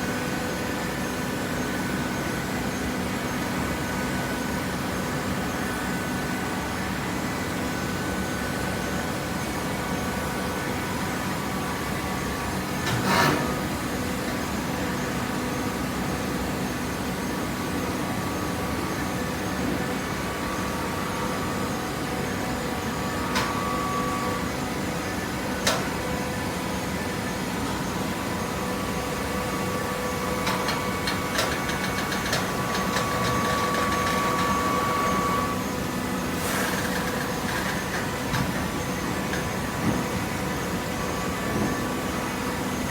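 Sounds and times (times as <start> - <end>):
hydraulic baler humming: 19.6 - 42.8.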